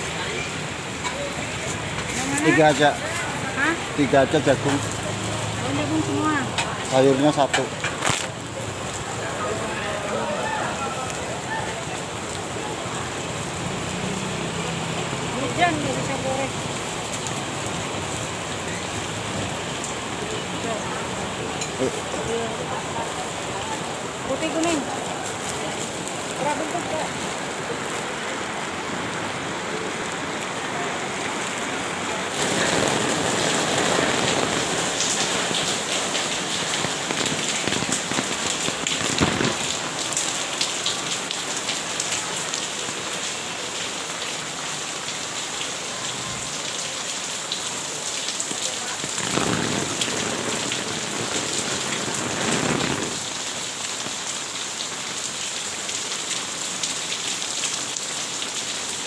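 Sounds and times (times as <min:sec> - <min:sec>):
rain falling: 0:00.0 - 0:59.0.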